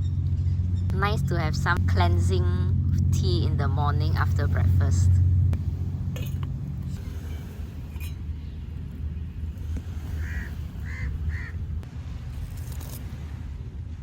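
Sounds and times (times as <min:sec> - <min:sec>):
steady low rumble: 0:00.0 - 0:14.0
crow cawing: 0:10.2 - 0:11.6.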